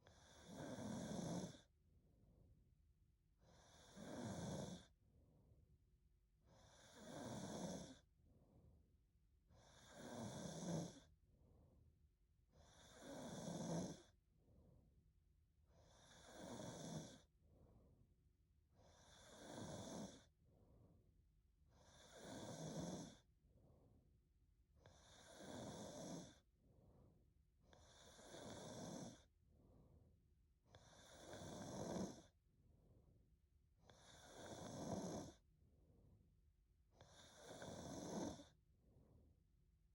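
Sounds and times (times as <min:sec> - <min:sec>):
woman snoring quietly: 0:00.0 - 0:01.7, 0:03.4 - 0:04.9, 0:06.5 - 0:08.0, 0:09.6 - 0:11.1, 0:12.6 - 0:14.1, 0:15.8 - 0:17.3, 0:18.9 - 0:20.3, 0:21.7 - 0:23.3, 0:24.8 - 0:26.4, 0:27.7 - 0:29.3, 0:30.7 - 0:32.3, 0:33.8 - 0:35.4, 0:37.0 - 0:38.6
faint breath: 0:08.2 - 0:08.8, 0:14.4 - 0:15.0, 0:17.4 - 0:18.1, 0:20.4 - 0:21.1, 0:23.5 - 0:24.1, 0:26.6 - 0:28.5, 0:29.5 - 0:31.0, 0:38.8 - 0:39.4.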